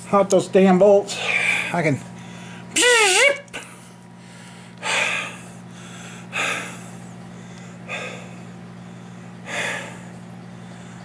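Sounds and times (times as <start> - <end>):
man breathing hard: 1.1 - 2.7, 4.1 - 11.0.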